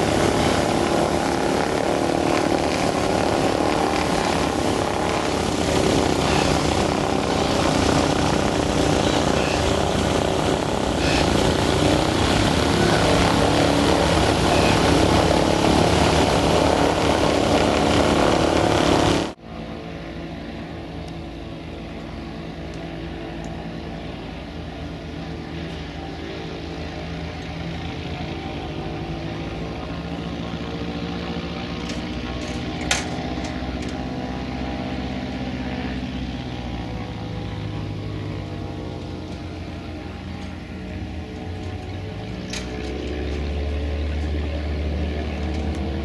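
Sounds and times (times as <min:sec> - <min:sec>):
heavy rushing noise: 0:00.0 - 0:19.4
propeller engine drone: 0:00.0 - 0:46.0
propeller plane engine: 0:00.0 - 0:46.0.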